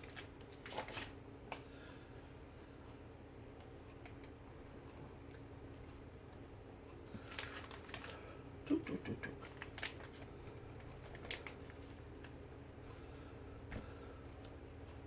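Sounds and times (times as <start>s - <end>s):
packaging crinkling: 0.0s - 1.2s, 7.2s - 8.2s, 9.4s - 12.0s.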